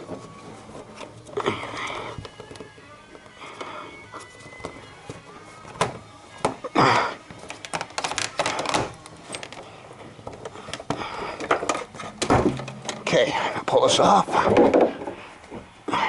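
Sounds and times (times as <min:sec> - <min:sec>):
car parts clicking and knocking: 0:07.4 - 0:13.2.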